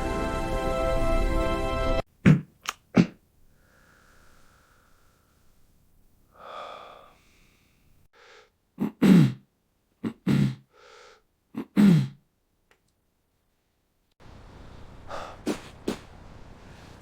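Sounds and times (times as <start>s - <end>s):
person coughing: 2.3s - 3.2s, 8.8s - 9.4s, 10.0s - 10.7s, 11.6s - 12.2s
breaths drawn in: 14.5s - 17.0s.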